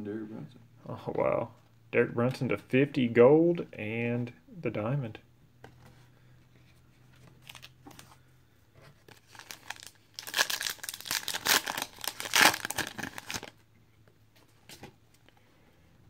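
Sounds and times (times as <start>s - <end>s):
foil wrapper tearing and crackling: 9.1s - 13.6s.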